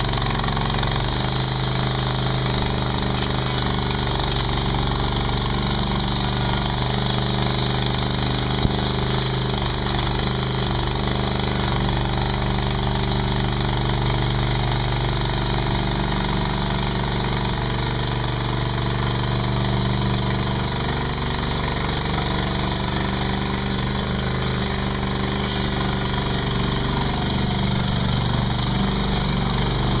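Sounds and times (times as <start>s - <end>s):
small engine running steadily: 0.0s - 30.0s.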